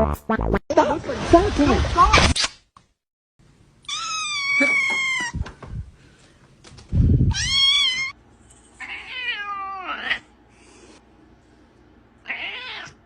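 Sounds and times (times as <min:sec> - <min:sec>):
cat meowing: 0:03.9 - 0:05.4, 0:07.3 - 0:08.2, 0:08.8 - 0:10.2, 0:12.2 - 0:13.0.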